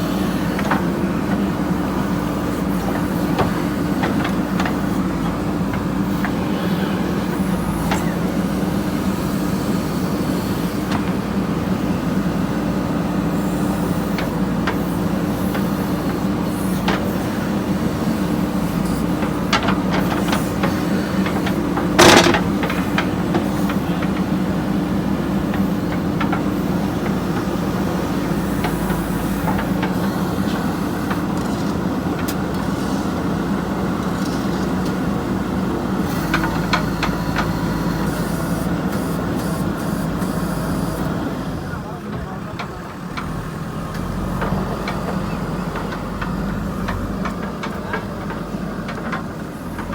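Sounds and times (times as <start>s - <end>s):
diesel engine running: 0.0s - 49.9s
metal clanks: 22.0s - 22.8s.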